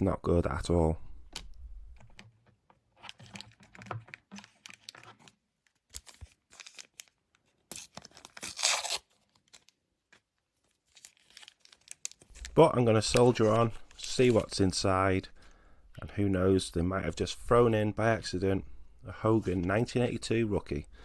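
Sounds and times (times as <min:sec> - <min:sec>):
wrapper crinkling: 0:03.0 - 0:09.8, 0:10.6 - 0:14.6
wrapper tearing: 0:03.0 - 0:09.8, 0:10.8 - 0:12.6.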